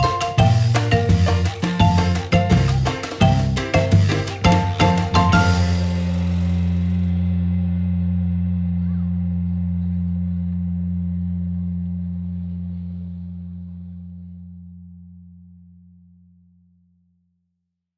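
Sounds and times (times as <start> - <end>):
low music note ringing out: 5.2 - 11.6.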